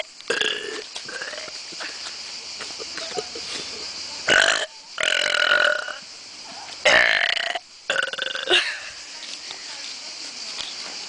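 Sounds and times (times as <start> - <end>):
boys burping: 0.3 - 2.0, 2.8 - 6.0, 6.8 - 8.9.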